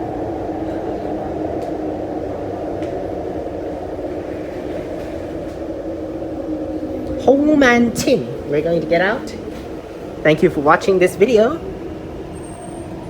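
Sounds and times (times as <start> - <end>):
metro train running rumble: 0.0 - 13.0
faint clicks: 1.5 - 1.8.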